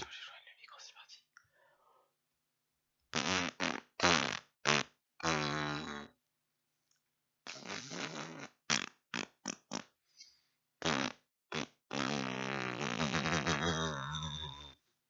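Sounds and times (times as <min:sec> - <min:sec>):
buzzy farts: 0:03.1 - 0:06.2, 0:07.5 - 0:09.9, 0:10.8 - 0:14.8.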